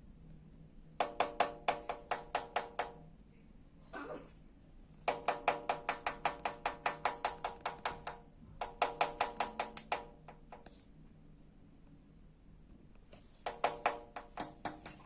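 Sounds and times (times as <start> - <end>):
bird beak knocking on hard object: 5.0 - 10.7, 13.4 - 15.0.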